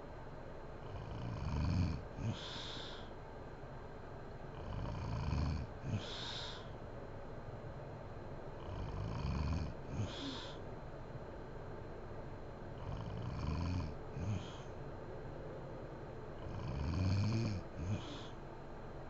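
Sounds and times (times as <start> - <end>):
woman snoring: 0.8 - 3.1, 4.6 - 6.7, 8.6 - 10.6, 12.8 - 14.6, 16.4 - 18.3.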